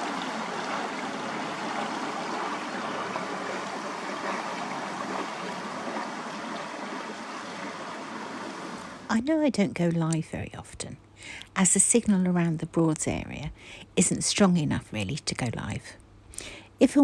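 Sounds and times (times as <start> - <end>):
river water rushing: 0.0 - 9.1.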